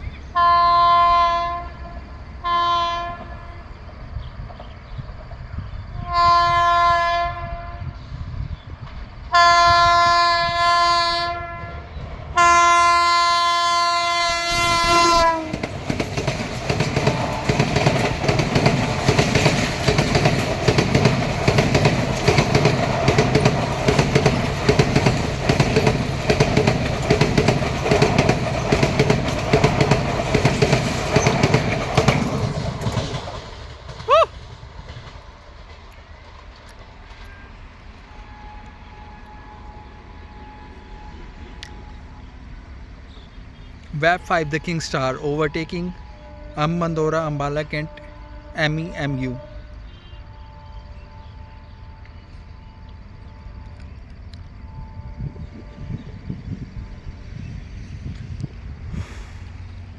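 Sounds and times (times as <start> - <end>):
locomotive horn blasts: 0.4 - 3.6, 6.0 - 8.0, 9.3 - 15.7, 37.2 - 42.4, 44.0 - 57.7
train wheels clattering over rail joints: 14.6 - 37.4.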